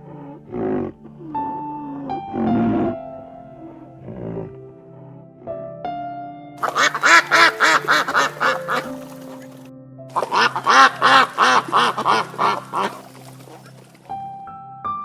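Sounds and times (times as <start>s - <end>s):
background music: 0.0s - 15.0s
duck quacking: 6.6s - 9.6s, 10.2s - 13.7s.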